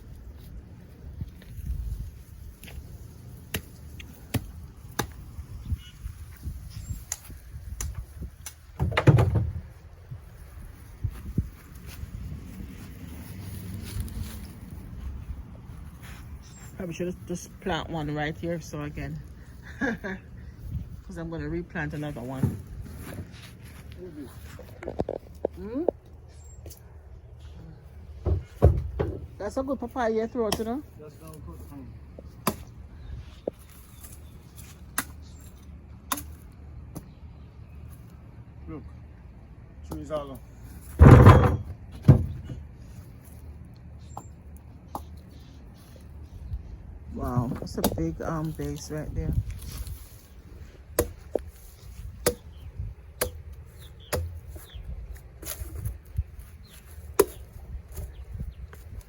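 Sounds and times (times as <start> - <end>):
chopping into tree trunk: 3.5 - 5.2, 32.4 - 32.8, 51.0 - 51.4, 52.2 - 52.6, 53.2 - 53.4, 54.1 - 54.7, 57.0 - 57.5.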